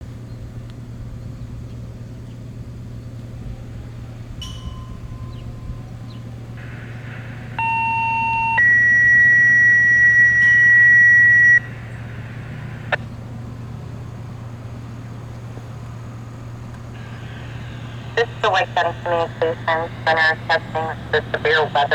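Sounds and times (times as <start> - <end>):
low hum: 0.0 - 21.9
radio hiss: 6.5 - 13.1, 16.4 - 21.9
paging tones: 6.6 - 13.0.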